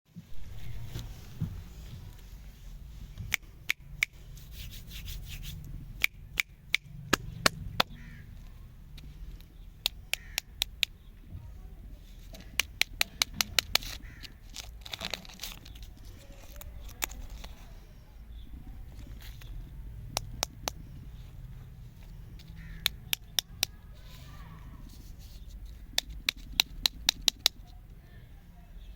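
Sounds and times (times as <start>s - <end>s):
steady low hum: 0.2s - 28.9s
candy wrapper clicks and taps: 12.3s - 17.6s, 25.9s - 27.6s
packaging rustling: 13.8s - 17.6s.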